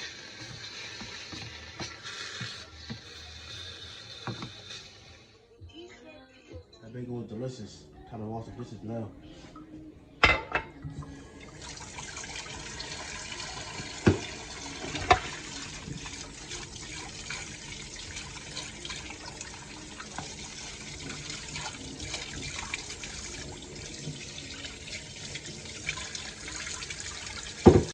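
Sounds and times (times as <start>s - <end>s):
tap running into sink: 0.2s - 3.1s, 4.2s - 4.7s, 13.4s - 16.3s, 18.1s - 27.9s
dishes knocking: 10.2s - 11.1s, 14.0s - 15.4s, 27.6s - 27.9s
dishes clinking: 10.2s - 11.2s, 14.0s - 15.4s, 27.6s - 27.9s.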